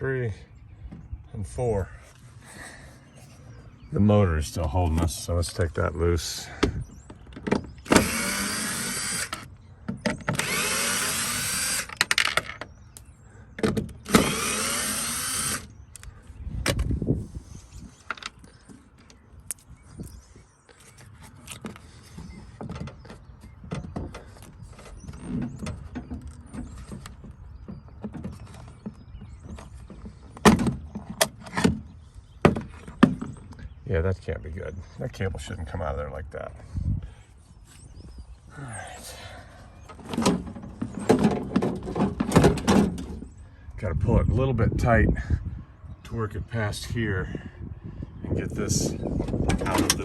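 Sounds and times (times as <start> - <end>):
cordless driver whirring: 7.8 - 12.7, 13.6 - 16.1.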